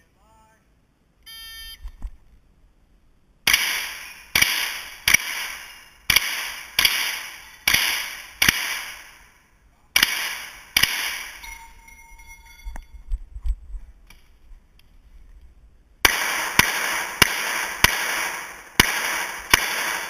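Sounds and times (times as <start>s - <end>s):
gunshots echoing indoors: 3.5s - 9.2s, 10.0s - 11.5s, 16.0s - 20.0s.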